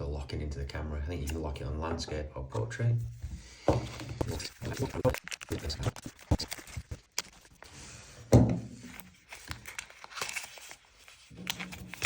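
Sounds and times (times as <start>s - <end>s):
plastic packaging crinkling: 4.4s - 7.7s, 8.8s - 12.0s.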